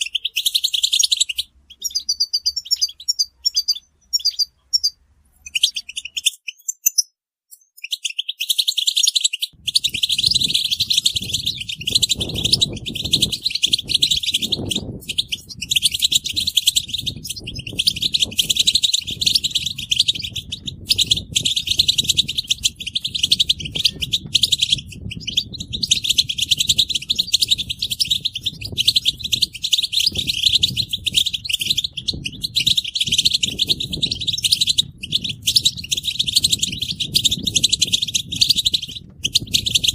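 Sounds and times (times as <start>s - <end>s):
goldfinches twittering chorus: 9.7s - 39.9s.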